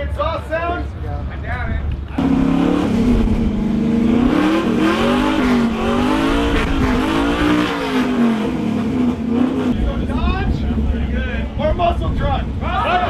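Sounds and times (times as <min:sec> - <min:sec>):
truck engine revving: 0:02.2 - 0:10.0.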